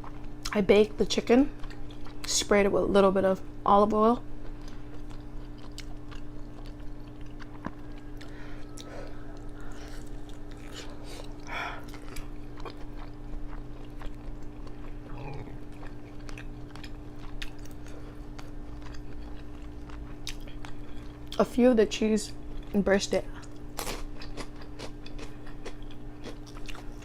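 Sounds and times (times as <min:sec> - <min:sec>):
faint steady hum: 0:00.0 - 0:27.0
crunchy chewing: 0:01.4 - 0:02.3, 0:04.4 - 0:21.4, 0:23.4 - 0:27.0.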